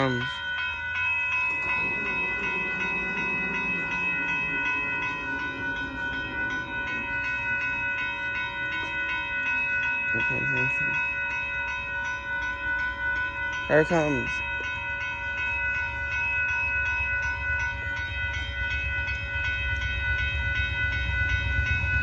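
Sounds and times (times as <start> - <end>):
crossing warning bell ringing: 0.0 - 22.0
low wavering hum: 0.6 - 13.7.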